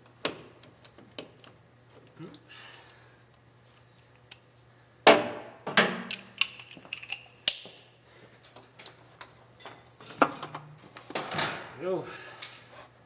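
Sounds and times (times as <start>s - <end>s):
metal tools clinking: 6.1s - 7.7s, 9.5s - 11.8s.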